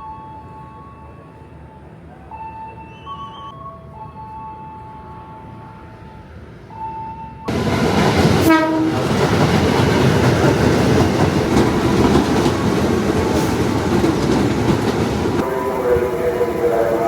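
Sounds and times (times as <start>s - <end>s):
train wheels clattering on rails: 7.5s - 17.0s.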